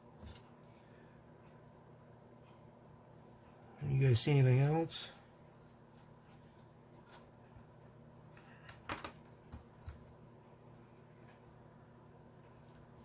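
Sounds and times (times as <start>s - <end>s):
faint clicks and knocks of parts: 5.1s - 10.2s.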